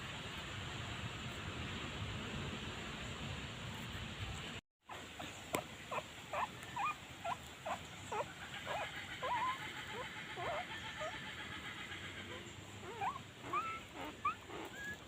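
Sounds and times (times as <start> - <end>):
puppies squeaking: 4.9 - 11.3, 12.3 - 15.0.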